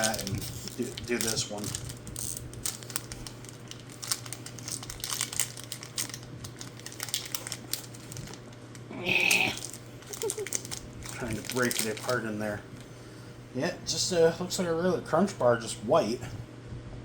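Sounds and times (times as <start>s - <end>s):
wrapper crinkling: 0.0s - 12.9s.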